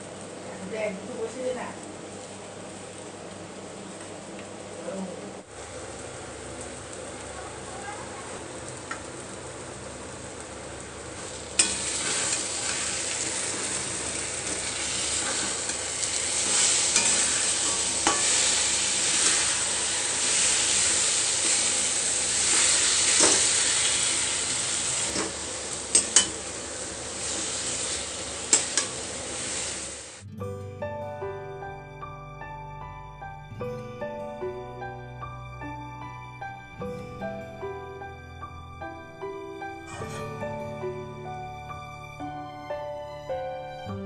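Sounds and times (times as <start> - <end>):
food sizzling in oil: 0.0 - 30.3.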